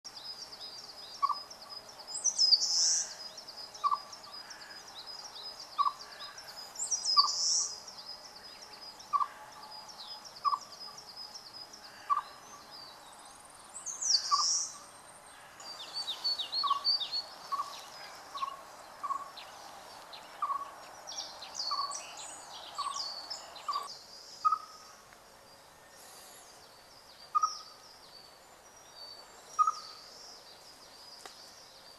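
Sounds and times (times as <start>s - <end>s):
birds trilling and singing: 0.1s - 31.9s
chipmunk chirping: 1.2s - 1.5s, 5.8s - 6.0s, 10.4s - 10.7s, 14.2s - 14.8s, 15.7s - 19.3s, 20.4s - 20.7s, 21.6s - 22.0s, 22.8s - 23.0s, 23.6s - 24.8s, 27.3s - 27.8s, 29.6s - 30.0s.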